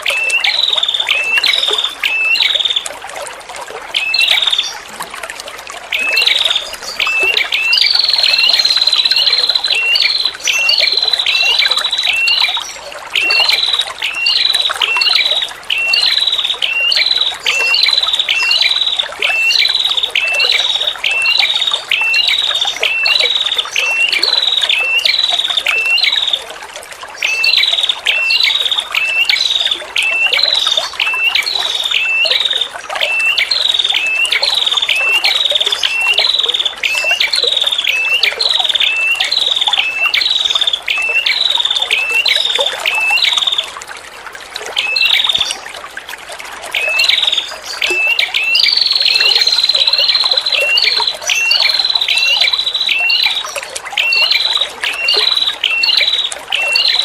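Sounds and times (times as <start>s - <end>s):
trickling water: 0.0s - 57.0s
bird trill: 27.2s - 43.6s, 46.8s - 57.0s.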